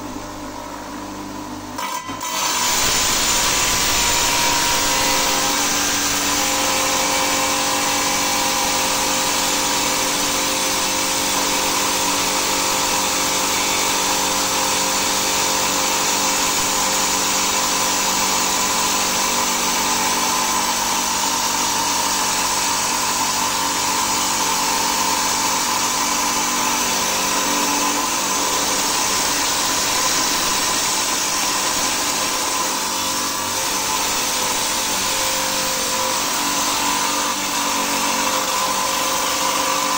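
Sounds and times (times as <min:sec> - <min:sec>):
stone-cutting saw whining: 0:01.8 - 0:39.9.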